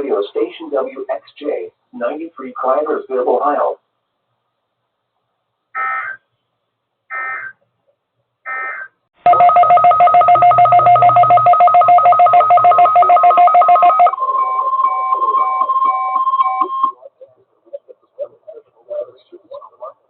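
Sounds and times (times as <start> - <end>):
intermittent beeps: 8.5 - 17.1
pulsing electronic two-tone signal: 9.3 - 17.0.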